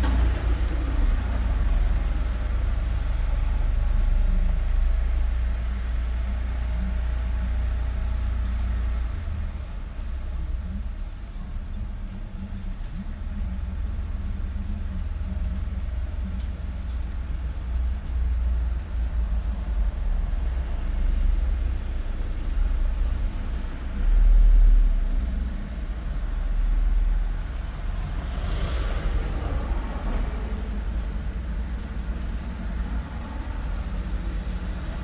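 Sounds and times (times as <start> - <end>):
traffic rumble: 0.0 - 35.0
vehicle tyres hissing past: 27.8 - 35.0.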